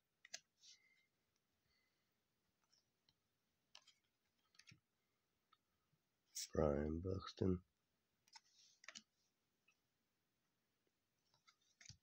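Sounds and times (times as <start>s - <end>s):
trading cards clicking and rustling: 11.3s - 12.0s.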